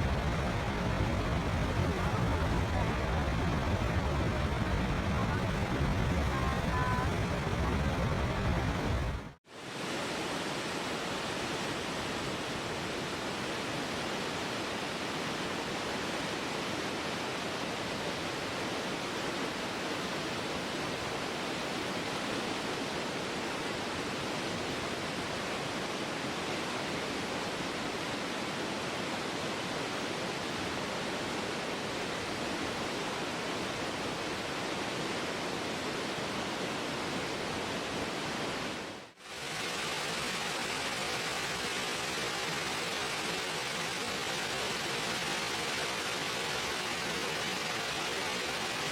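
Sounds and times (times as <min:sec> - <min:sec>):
waterfall rushing: 0:00.0 - 0:10.2, 0:39.3 - 0:48.9.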